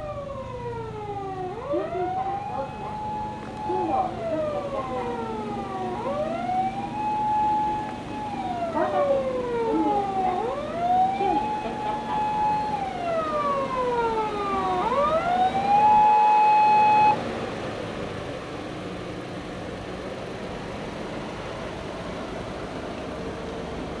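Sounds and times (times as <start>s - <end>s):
electronic wail siren: 0.0s - 17.2s.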